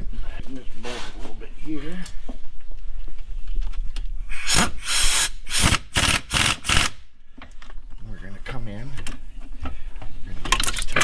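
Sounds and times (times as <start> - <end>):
ratchet wrench rasping: 4.4 - 7.0.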